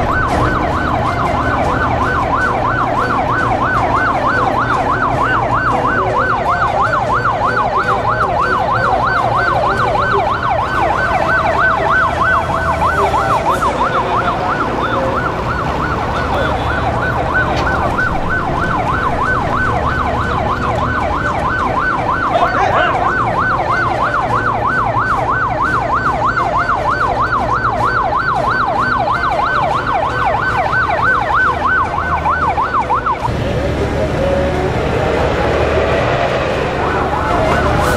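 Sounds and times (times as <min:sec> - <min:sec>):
electronic siren yelping: 0:00.0 - 0:37.9
low engine hum: 0:33.0 - 0:37.9.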